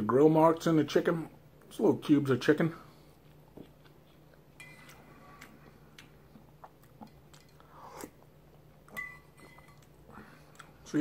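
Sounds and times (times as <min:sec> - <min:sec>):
man chewing soup: 0:02.9 - 0:10.9.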